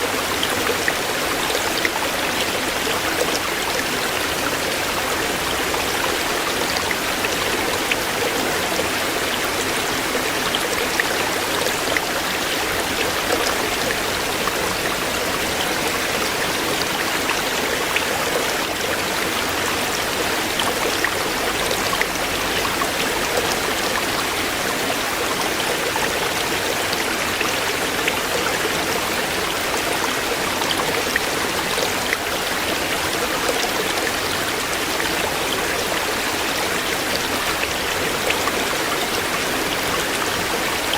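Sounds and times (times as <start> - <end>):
stream flowing over stones: 0.0 - 40.9.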